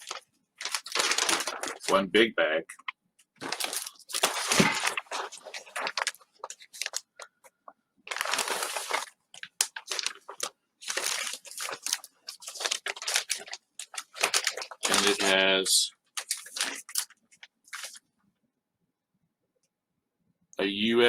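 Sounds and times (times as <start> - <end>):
plastic bag rustling and crinkling: 0.0 - 2.0, 2.7 - 7.3, 8.1 - 15.5, 16.1 - 18.0.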